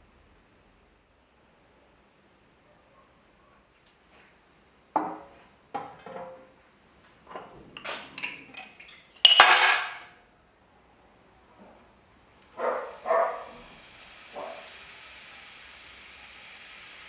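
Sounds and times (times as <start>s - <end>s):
metal pieces clinking: 7.8s - 10.1s.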